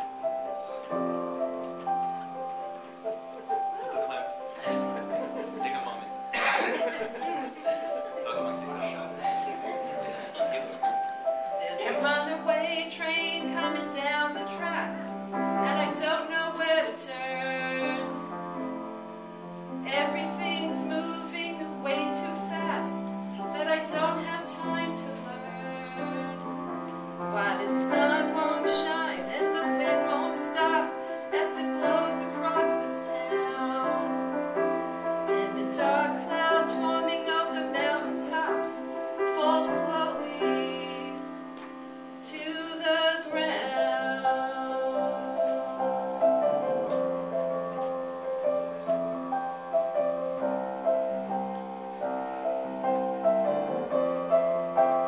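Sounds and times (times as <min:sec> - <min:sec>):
piano accompaniment: 0:00.0 - 0:55.0
woman singing: 0:11.6 - 0:18.7, 0:19.8 - 0:34.4, 0:35.3 - 0:41.5, 0:42.2 - 0:46.8.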